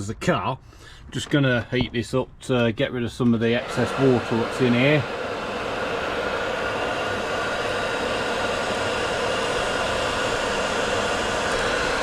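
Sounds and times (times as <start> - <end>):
heat gun blowing air: 3.4 - 12.0.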